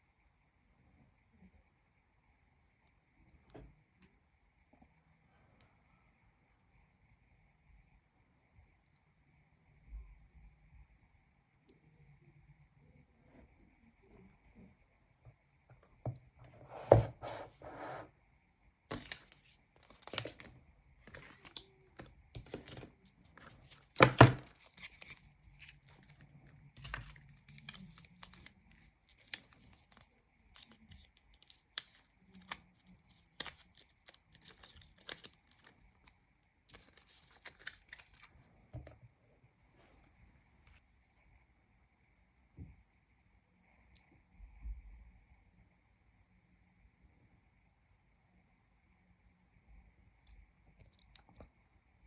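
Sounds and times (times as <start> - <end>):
packaging tearing and rustling: 18.9 - 20.5, 21.1 - 38.4.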